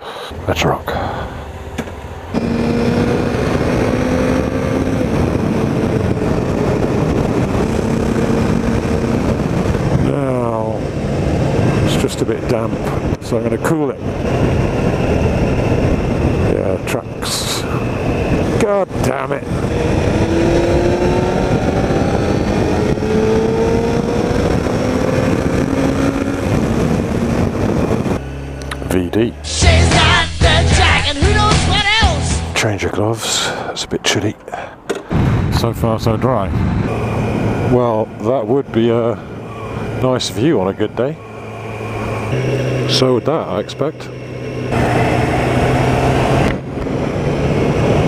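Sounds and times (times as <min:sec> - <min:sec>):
wind rush on microphone: 0:00.4 - 0:28.6, 0:35.1 - 0:48.0
motorcycle engine running: 0:01.4 - 0:16.5, 0:36.7 - 0:48.0.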